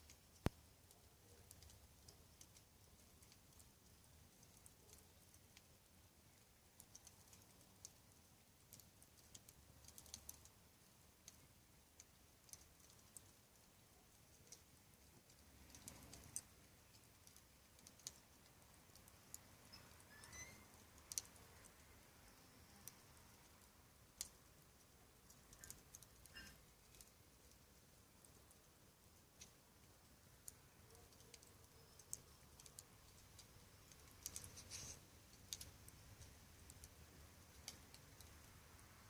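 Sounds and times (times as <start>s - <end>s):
fire pops and snaps: 0.0s - 21.8s, 22.6s - 38.9s
campfire crackling: 0.0s - 39.0s
faint whistle: 19.7s - 20.7s.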